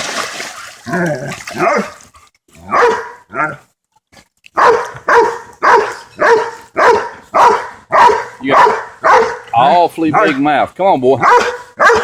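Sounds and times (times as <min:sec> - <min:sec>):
dog barking: 0:02.7 - 0:03.6, 0:04.6 - 0:09.5, 0:10.1 - 0:10.4, 0:11.2 - 0:12.0.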